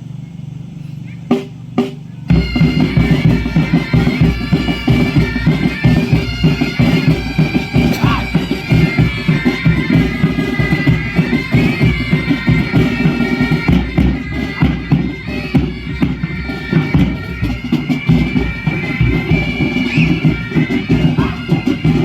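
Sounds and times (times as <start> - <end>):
bagpipe melody with drones: 2.3 - 22.0.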